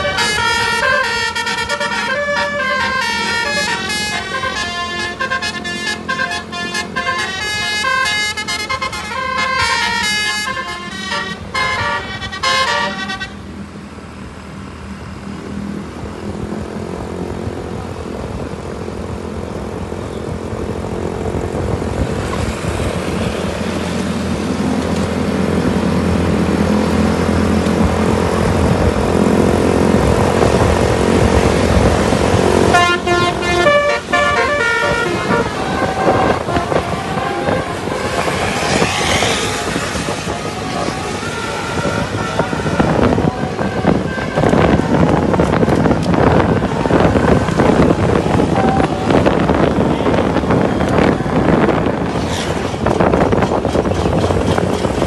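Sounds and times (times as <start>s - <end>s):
musical bus air horn: 0.0s - 13.5s, 32.4s - 39.9s, 40.8s - 45.1s, 46.2s - 52.1s
engine and road noise: 0.0s - 55.0s.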